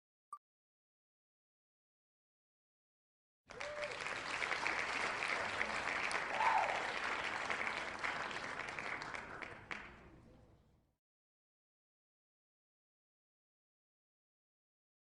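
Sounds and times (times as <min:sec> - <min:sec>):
crowd applauding: 0:03.5 - 0:10.2.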